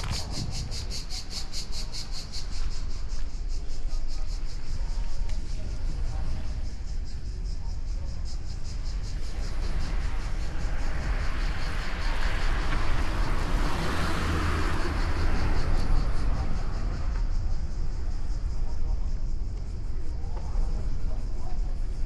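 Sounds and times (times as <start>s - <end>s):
vehicle passing by: 9.1s - 17.9s.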